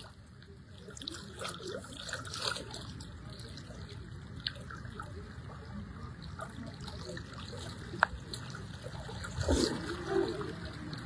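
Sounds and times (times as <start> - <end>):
floodwater flowing and trickling: 0.0 - 11.0
water swashing: 7.4 - 11.0.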